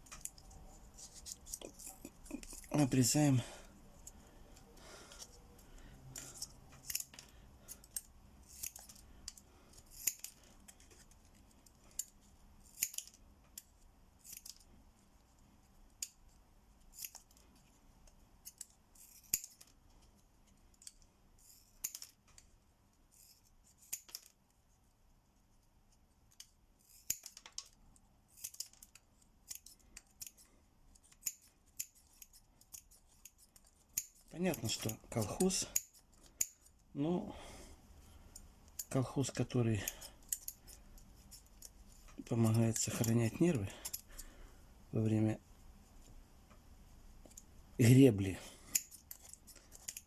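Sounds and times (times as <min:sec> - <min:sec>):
scissors snipping plastic: 0:06.1 - 0:14.6, 0:26.3 - 0:36.8, 0:48.7 - 0:50.0.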